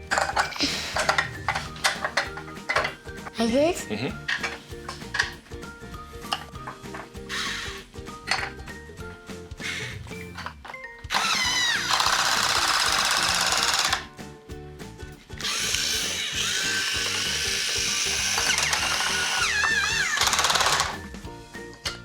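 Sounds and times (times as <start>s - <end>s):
background music: 0.0s - 22.0s
toy drill motor whining: 0.1s - 3.4s, 7.2s - 7.9s, 9.6s - 14.1s, 15.4s - 21.2s.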